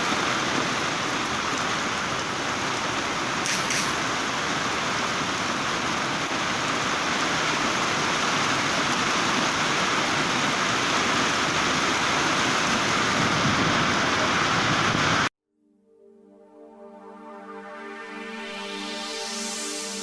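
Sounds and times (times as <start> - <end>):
steady rain falling: 0.0 - 15.3.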